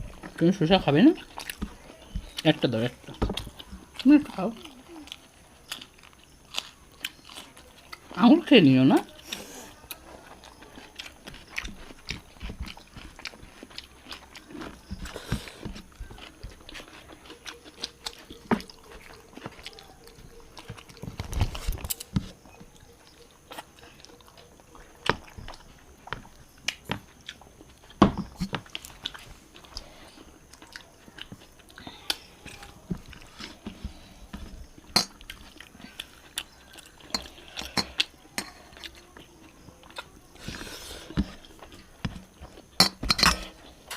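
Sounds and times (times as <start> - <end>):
people chewing: 0.0 - 43.9.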